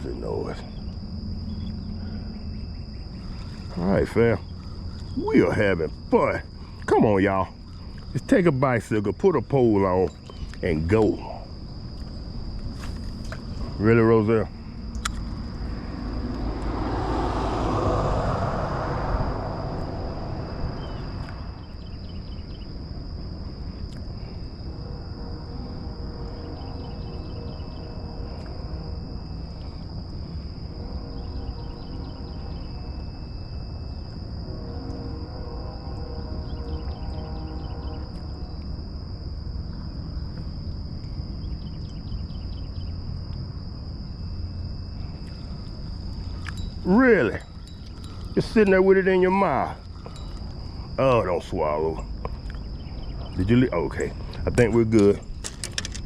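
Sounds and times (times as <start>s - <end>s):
distant vehicle passing: 0.0s - 8.2s, 13.4s - 23.1s, 25.6s - 38.9s, 44.0s - 55.4s
high-pitched insect drone: 0.0s - 56.0s
low rumble: 11.5s - 22.6s.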